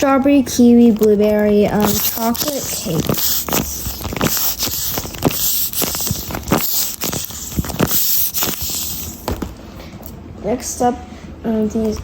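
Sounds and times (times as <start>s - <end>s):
paper and tape crinkling: 0.5s - 9.6s.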